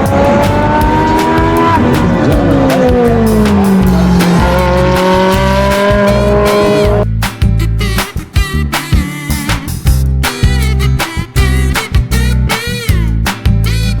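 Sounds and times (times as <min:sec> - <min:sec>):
race car engine: 0:00.0 - 0:07.0
background music: 0:00.0 - 0:14.0.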